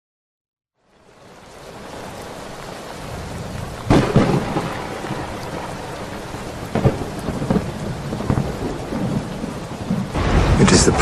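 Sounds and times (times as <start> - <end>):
steady rain: 0.8 - 11.0
thunder cracking: 3.0 - 11.0.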